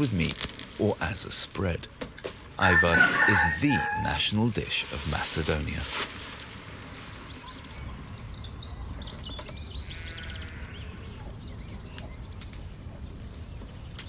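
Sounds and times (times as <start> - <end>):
low outdoor background: 0.0 - 14.0
small birds chirping: 6.9 - 14.0.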